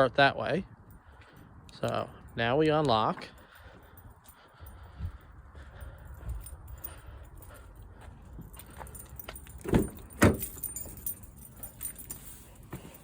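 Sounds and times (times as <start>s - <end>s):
keys jangling: 3.4s - 13.0s.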